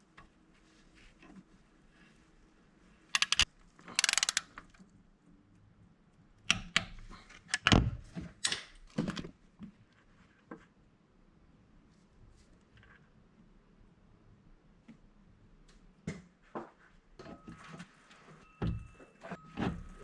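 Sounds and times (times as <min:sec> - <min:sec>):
ratchet clicks: 0:03.2 - 0:04.5.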